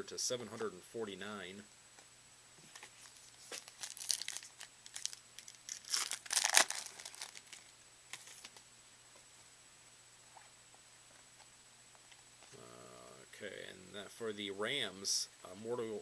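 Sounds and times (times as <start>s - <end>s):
foil wrapper crinkling and tearing: 3.0s - 8.4s.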